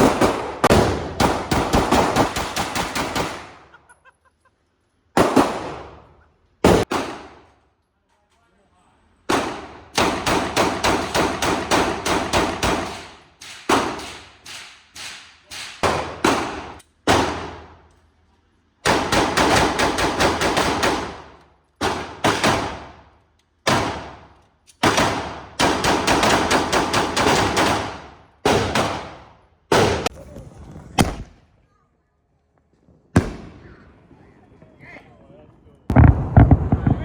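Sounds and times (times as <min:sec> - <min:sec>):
fireworks bangs: 0:00.0 - 0:03.8, 0:05.1 - 0:07.5, 0:27.2 - 0:31.6, 0:32.6 - 0:34.7, 0:35.9 - 0:37.0.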